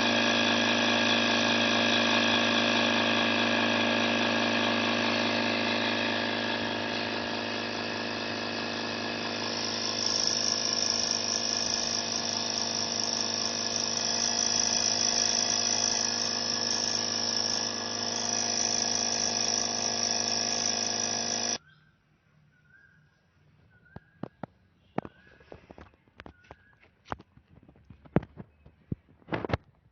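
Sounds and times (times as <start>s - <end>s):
vacuum motor hum and hiss: 0.0s - 21.6s.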